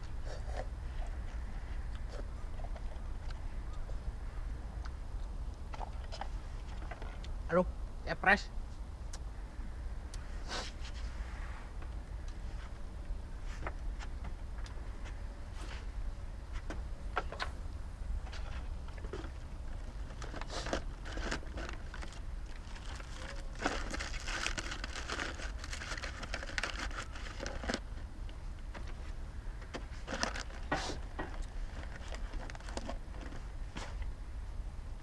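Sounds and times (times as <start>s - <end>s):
steady low rumble: 0.0s - 35.0s
food wrappers crinkling: 19.0s - 27.9s, 29.9s - 33.5s.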